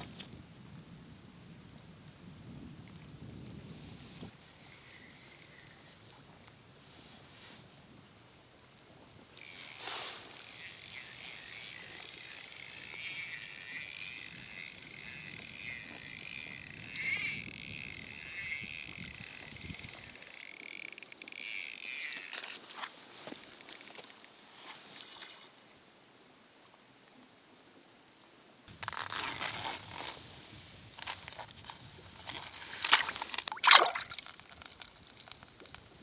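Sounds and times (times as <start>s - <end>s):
fishing reel clicks: 9.4s - 22.8s, 23.4s - 24.3s
fishing reel ratchety whir: 9.4s - 22.8s, 23.4s - 24.3s, 28.8s - 30.1s.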